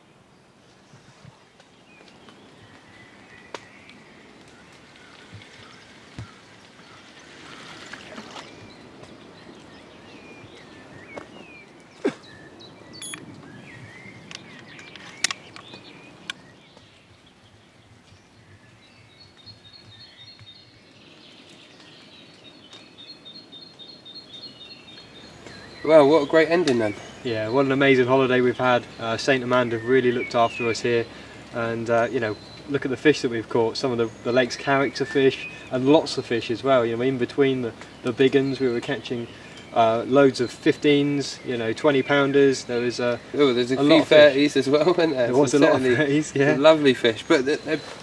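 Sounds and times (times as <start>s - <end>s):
birds singing: 0.0s - 48.0s
rapid repeated chirping: 12.9s - 13.2s.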